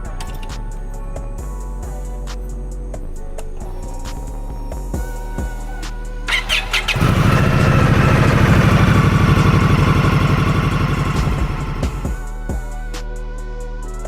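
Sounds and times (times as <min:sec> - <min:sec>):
motorcycle engine starting and idling: 0:06.3 - 0:12.2.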